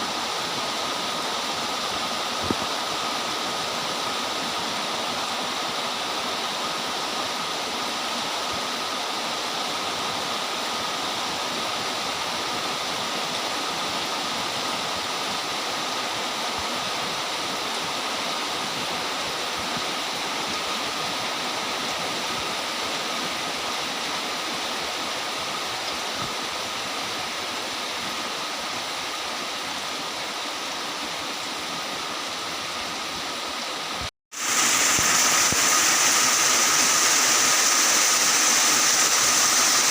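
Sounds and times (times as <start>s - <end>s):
heavy rain hissing: 0.0s - 39.9s.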